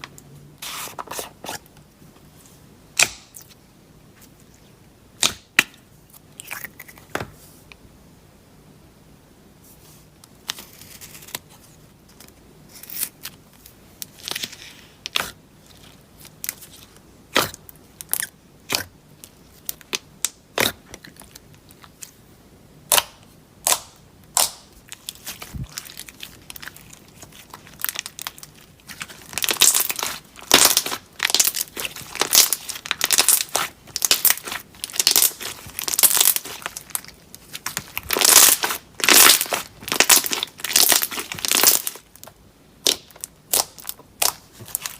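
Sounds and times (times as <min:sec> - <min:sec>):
slime clicking and crackling: 0:22.9 - 0:44.9.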